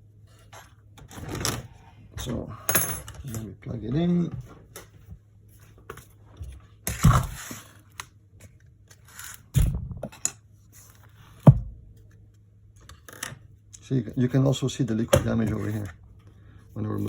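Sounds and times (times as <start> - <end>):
small handling clicks and scrapes: 5.8 - 9.5.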